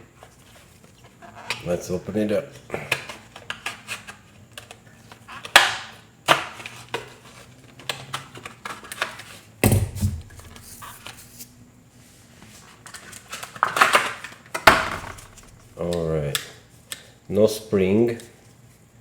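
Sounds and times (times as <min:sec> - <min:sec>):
heavy thump: 0:09.6 - 0:10.8, 0:14.7 - 0:15.8.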